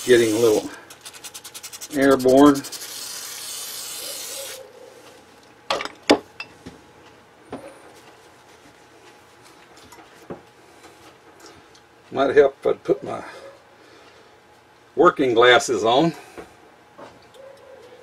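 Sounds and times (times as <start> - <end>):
aerosol can spraying: 0.0 - 4.6.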